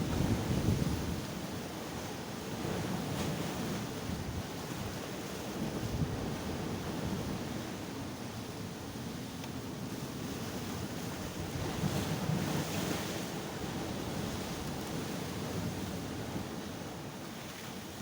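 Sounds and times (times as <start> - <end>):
wind buffeting microphone: 0.0 - 1.3, 5.6 - 7.6.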